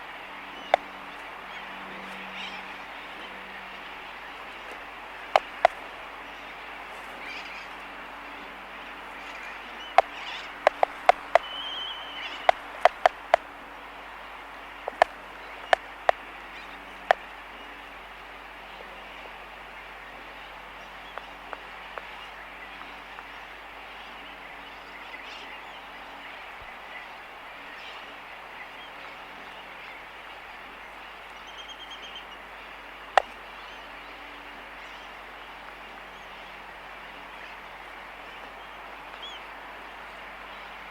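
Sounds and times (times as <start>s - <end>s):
distant tern colony din: 0.0s - 40.9s
faint low hum: 0.0s - 40.9s
albatross bill clacking: 0.5s - 3.5s, 4.4s - 8.0s, 9.2s - 17.8s, 33.0s - 33.4s.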